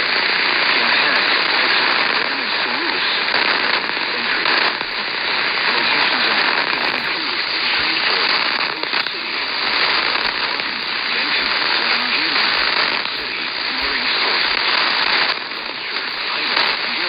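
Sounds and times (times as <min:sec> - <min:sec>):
faint voice: 0:00.0 - 0:17.0
radio static hiss and crackle: 0:00.0 - 0:17.0.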